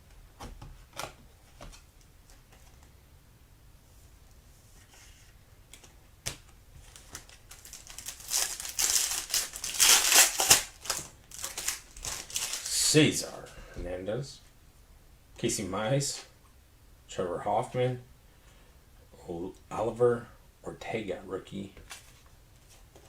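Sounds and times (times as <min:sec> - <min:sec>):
foil wrapper crinkling and tearing: 0:06.9 - 0:12.8.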